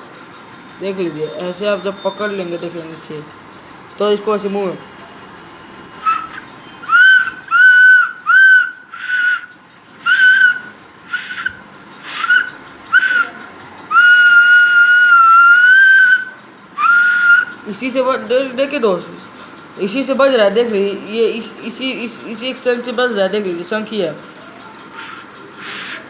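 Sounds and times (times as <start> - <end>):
conch shell whistle toots: 6.0 - 17.6, 24.9 - 26.0.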